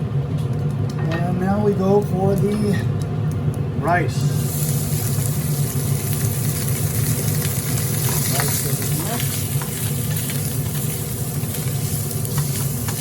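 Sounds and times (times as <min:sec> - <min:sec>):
rice sizzling in hot oil: 0:04.1 - 0:13.0.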